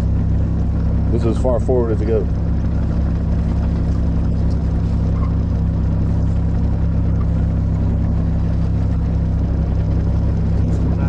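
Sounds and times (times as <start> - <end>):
mini excavator diesel engine: 0.0 - 11.0.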